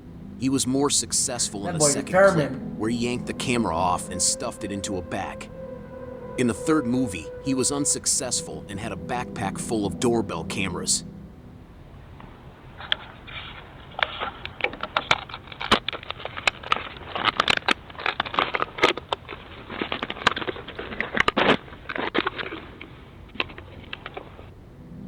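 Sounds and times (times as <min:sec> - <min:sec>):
scraping and clicking on camera: 0:12.9 - 0:24.5.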